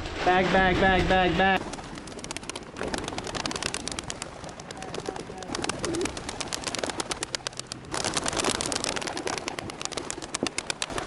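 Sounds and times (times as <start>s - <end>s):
pigeon wings clapping and flapping: 0.7s - 11.0s
pigeon cooing: 2.8s - 7.5s.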